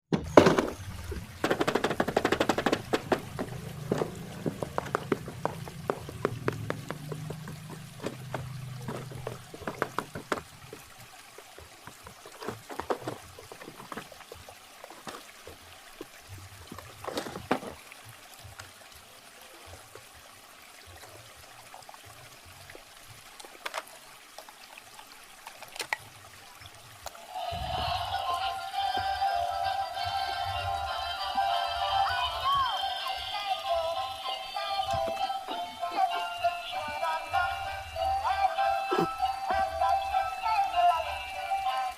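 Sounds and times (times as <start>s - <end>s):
music: 27.3s - 41.9s.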